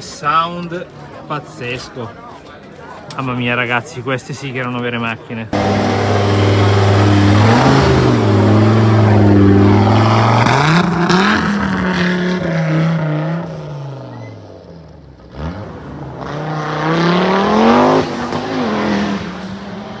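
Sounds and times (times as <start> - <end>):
rally car engine revving: 5.6 - 14.1, 15.2 - 20.0.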